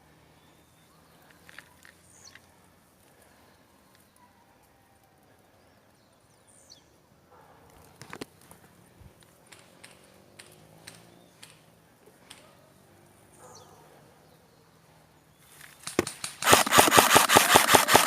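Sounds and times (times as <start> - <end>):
outdoor ambience: 0.0 - 18.0
sharp clicks: 9.5 - 11.6, 15.7 - 18.0.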